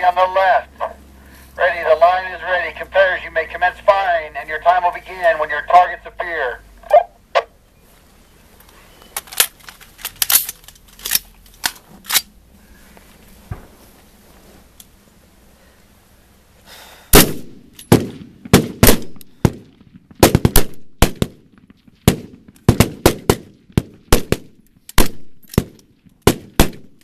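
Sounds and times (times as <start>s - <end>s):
rifles firing: 17.2s - 27.0s.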